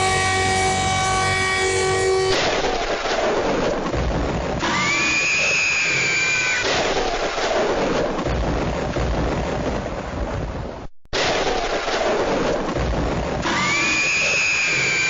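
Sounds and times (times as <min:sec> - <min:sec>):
harsh noisy emergency alarm: 0:00.0 - 0:02.6
tone gliding up: 0:00.0 - 0:02.6.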